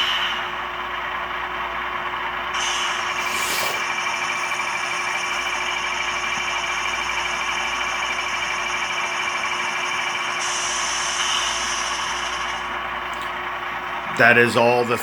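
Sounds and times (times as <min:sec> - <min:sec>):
hiss: 0:00.0 - 0:00.6, 0:02.6 - 0:04.0, 0:10.4 - 0:12.6
diesel engine sound through small speaker: 0:00.0 - 0:15.0.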